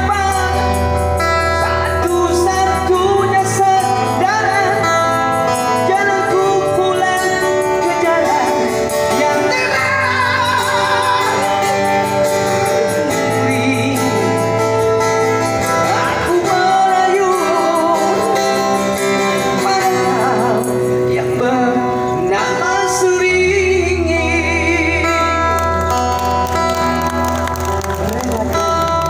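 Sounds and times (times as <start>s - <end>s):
person singing long notes: 0.0s - 26.2s
band playing ballad: 0.0s - 29.0s.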